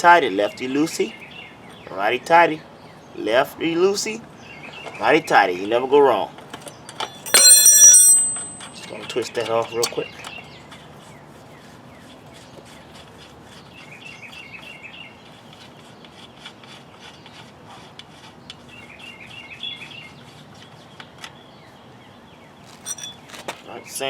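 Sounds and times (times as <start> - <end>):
wrench rubbing and clicking: 22.8 - 23.2.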